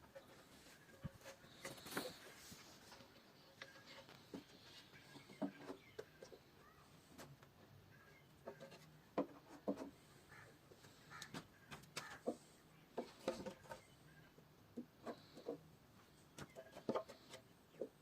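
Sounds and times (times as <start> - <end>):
wood knocking and scraping: 0.0 - 6.4, 8.4 - 14.0, 16.3 - 18.0.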